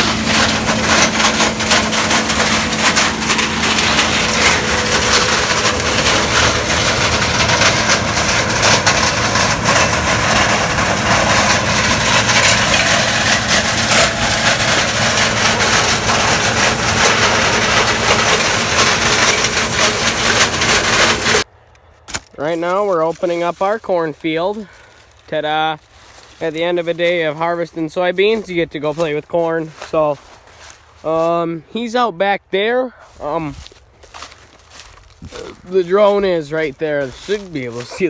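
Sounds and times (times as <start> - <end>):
combine engine hum: 0.0 - 27.4.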